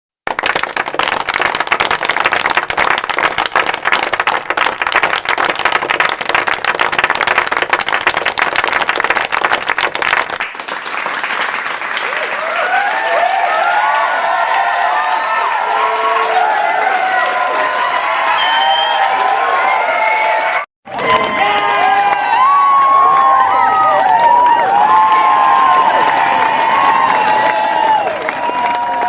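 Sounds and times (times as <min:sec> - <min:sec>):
crowd applauding: 0:00.2 - 0:29.0
crowd cheering and shouting: 0:12.1 - 0:29.0.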